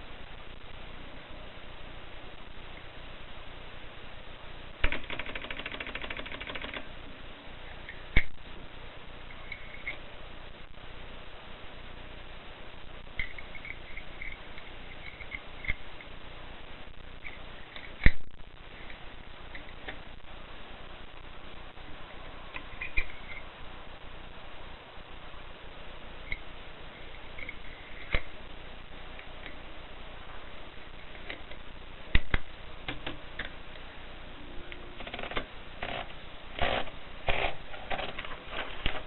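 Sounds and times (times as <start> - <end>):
typewriter clacks: 4.8 - 6.9
typewriter ratcheting rattle: 4.8 - 6.9.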